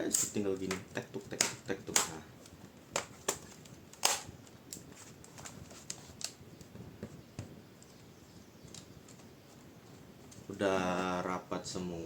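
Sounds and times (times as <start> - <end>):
plastic clips snapping: 0.1 - 2.2, 3.0 - 4.8.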